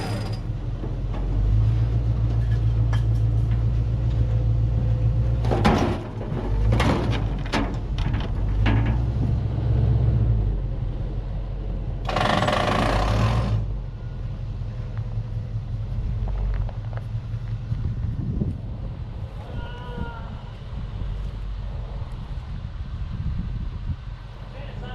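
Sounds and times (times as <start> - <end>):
machinery low rumble: 0.0 - 24.9
sharp metal knocks: 12.0 - 13.6.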